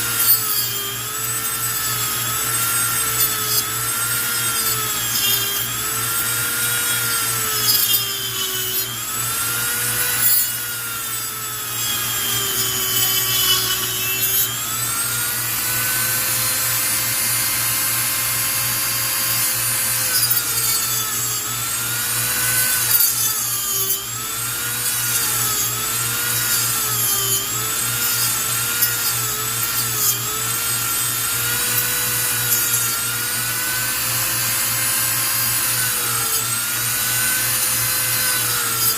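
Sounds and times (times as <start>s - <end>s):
rotary tool cutting plastic: 0.0s - 38.9s.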